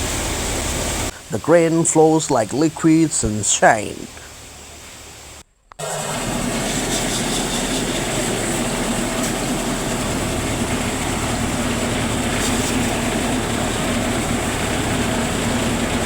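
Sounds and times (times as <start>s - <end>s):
threshing machine running: 0.0s - 16.0s.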